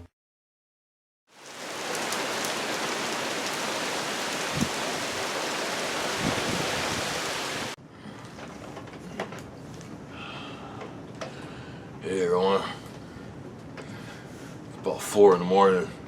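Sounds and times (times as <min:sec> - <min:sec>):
heavy rain and wind: 0:01.3 - 0:07.8.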